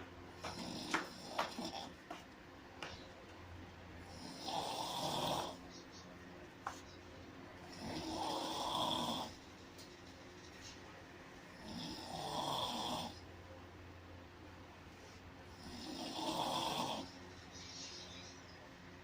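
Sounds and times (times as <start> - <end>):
person snoring: 0.4 - 1.9, 4.0 - 5.6, 7.7 - 9.4, 11.6 - 13.2, 15.5 - 17.1.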